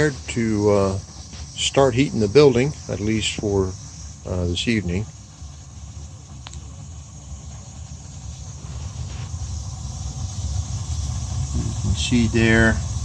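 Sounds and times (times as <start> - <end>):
boiler burner rumble: 0.0 - 13.0
faint tick: 6.4 - 6.6.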